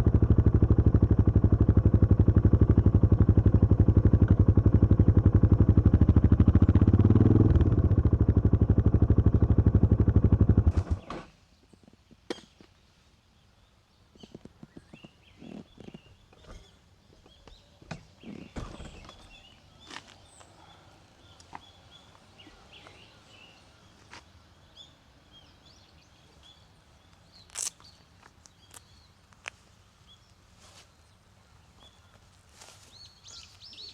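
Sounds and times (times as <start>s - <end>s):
motorcycle engine idling: 0.0s - 11.2s
faint bird chirps: 13.4s - 29.2s, 31.0s - 33.9s.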